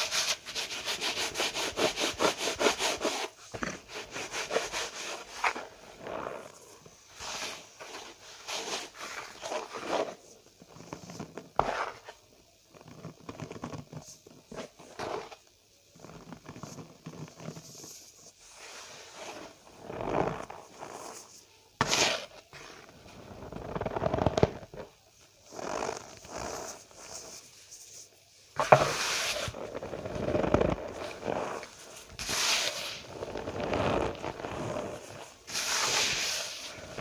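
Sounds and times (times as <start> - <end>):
cornstarch squeezed by hand: 30.9 - 37.0.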